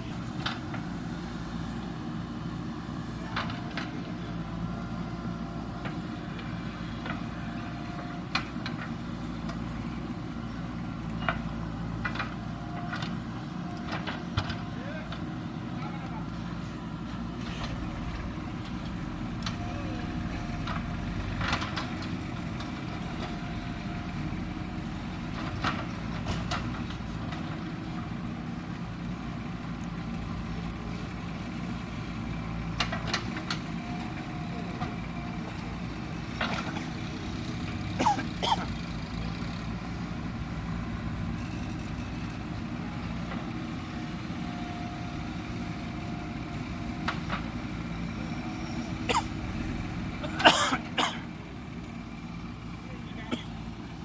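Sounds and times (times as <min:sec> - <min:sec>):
diesel engine running: 0:00.0 - 0:54.0.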